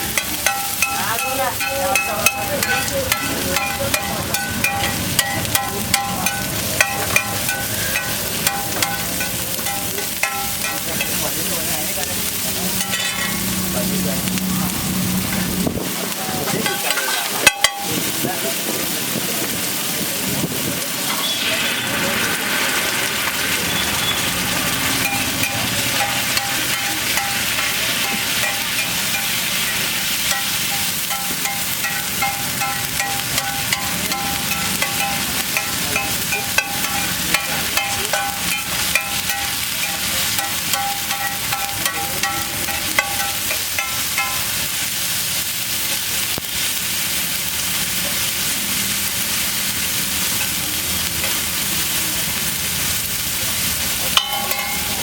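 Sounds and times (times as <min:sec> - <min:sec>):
utensil clicking on pan: 0:00.0 - 0:11.4, 0:16.5 - 0:18.2, 0:24.8 - 0:44.8, 0:54.1 - 0:55.0
egg sizzling on a hot pan: 0:00.0 - 0:55.0.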